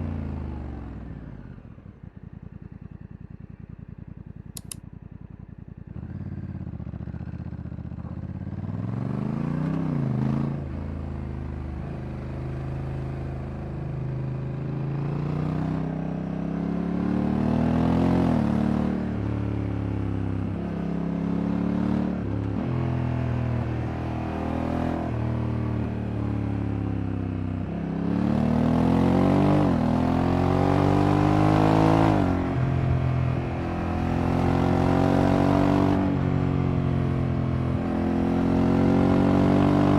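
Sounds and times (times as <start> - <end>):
motorcycle engine shifting gears: 4.4 - 4.9.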